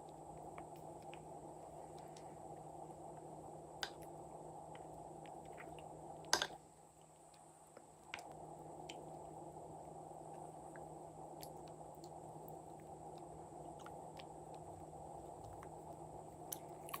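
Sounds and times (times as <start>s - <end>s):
slime squishing: 11.4s - 17.0s.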